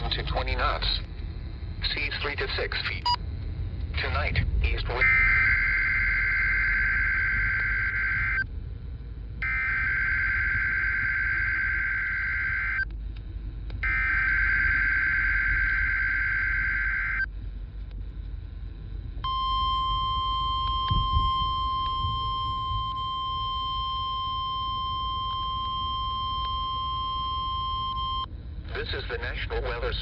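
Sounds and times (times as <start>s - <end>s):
warbling digital data bursts: 4.9s - 8.4s, 9.4s - 12.8s, 13.8s - 17.3s, 19.3s - 28.3s
steady warning alarm tone: 5.0s - 8.4s, 9.4s - 12.8s, 13.8s - 17.3s, 19.2s - 28.3s.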